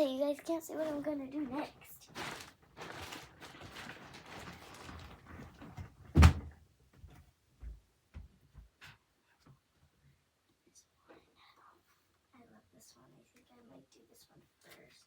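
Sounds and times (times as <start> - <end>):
rustling: 0.8 - 6.5
loud thump: 6.2 - 6.5.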